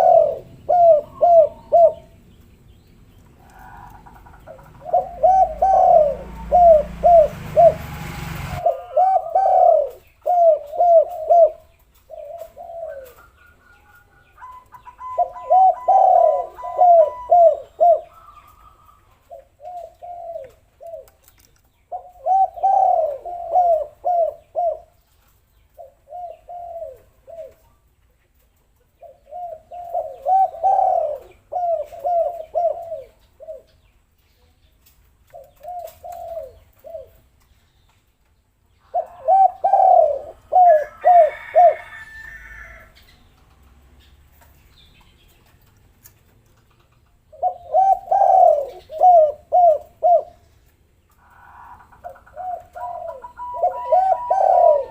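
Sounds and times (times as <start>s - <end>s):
doves cooing: 0.0s - 27.9s, 29.0s - 33.9s, 35.3s - 37.4s, 38.8s - 45.8s, 46.4s - 54.9s
rushing noise: 6.2s - 8.8s.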